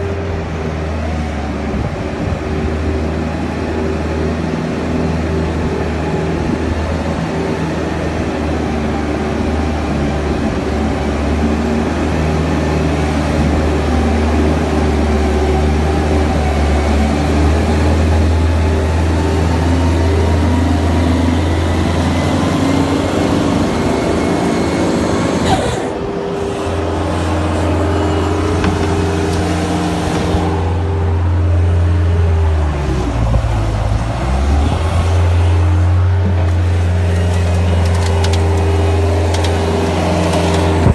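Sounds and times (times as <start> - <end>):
loader engine running: 0.0 - 40.9.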